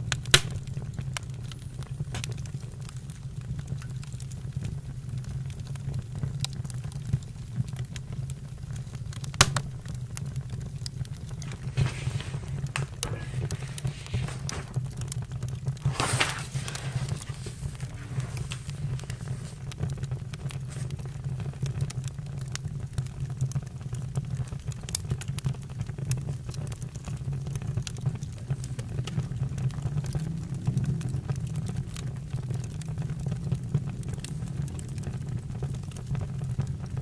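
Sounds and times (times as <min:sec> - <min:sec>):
campfire crackling and popping: 0:00.0 - 0:37.0
fire low rumble: 0:00.0 - 0:37.0
fire hiss: 0:09.4 - 0:21.7.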